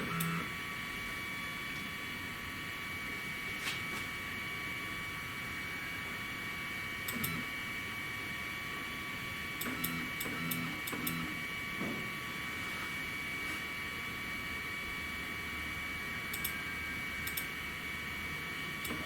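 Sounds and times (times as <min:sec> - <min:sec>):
cnc router high whine: 0:00.0 - 0:19.0
stepper motor clicks and buzz: 0:09.6 - 0:11.3.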